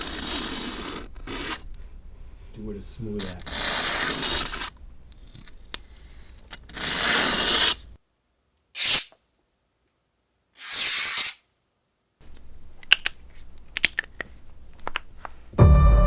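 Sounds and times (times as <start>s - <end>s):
clicks and handling noise: 4.7s - 6.8s, 12.2s - 15.4s
knife blade scraping metal: 5.4s - 7.9s, 8.8s - 9.1s.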